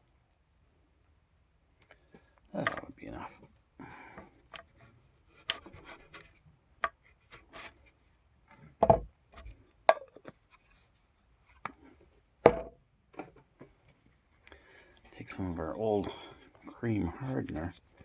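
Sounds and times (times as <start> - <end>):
light scraping: 13.9 - 18.0.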